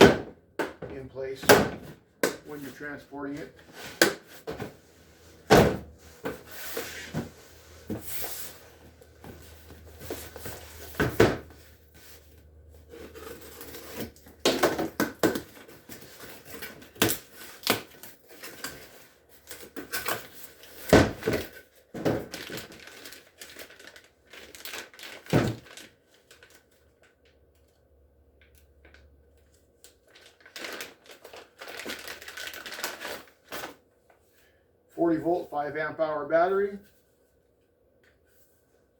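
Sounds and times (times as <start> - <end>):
packaging crinkling: 22.2 - 27.4, 29.8 - 33.8.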